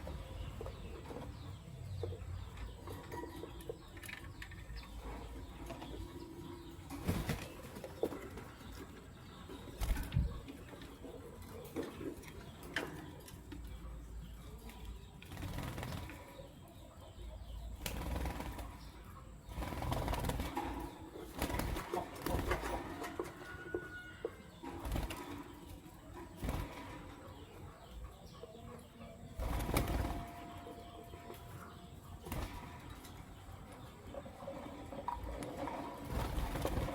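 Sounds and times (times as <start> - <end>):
birds flapping wings: 6.9 - 8.2, 9.8 - 10.3, 15.2 - 16.2, 17.8 - 18.9, 19.5 - 23.0, 24.8 - 25.4, 26.4 - 27.0, 29.4 - 30.5, 32.2 - 32.8, 35.6 - 36.9.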